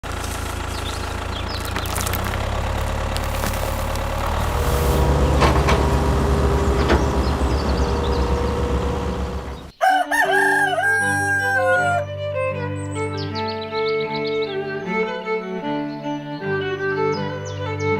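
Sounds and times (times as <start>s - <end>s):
low mechanical drone: 0.0s - 9.7s
string music: 0.1s - 9.8s, 10.6s - 17.9s
rooster crowing: 7.8s - 12.1s.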